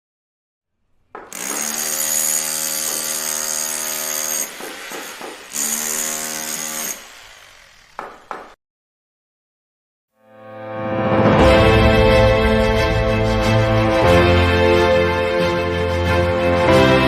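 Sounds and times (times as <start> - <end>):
power tool running: 1.2 - 8.6.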